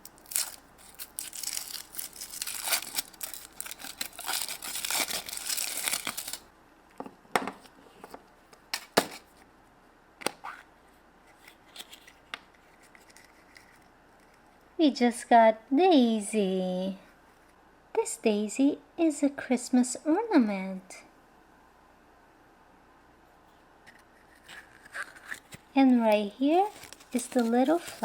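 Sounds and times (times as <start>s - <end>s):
foil wrapper crinkling and tearing: 0.0s - 6.5s, 26.6s - 28.0s.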